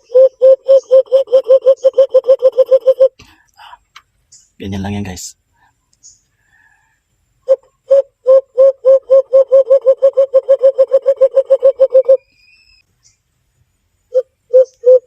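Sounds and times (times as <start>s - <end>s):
hollow hooting hand call: 0.0s - 3.2s, 7.4s - 12.2s.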